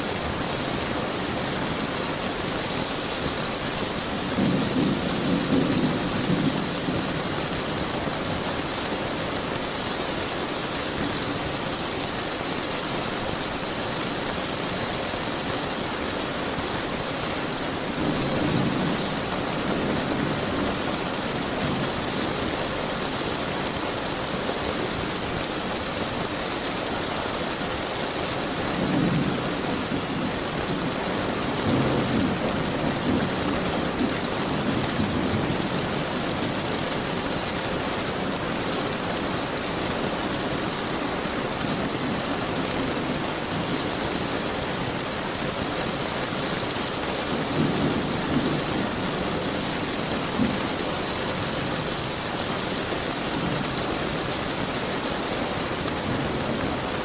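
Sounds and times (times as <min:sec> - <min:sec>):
rain falling: 0:00.0 - 0:57.0
distant thunder rumbling: 0:00.1 - 0:09.5, 0:15.9 - 0:23.1, 0:28.4 - 0:57.0.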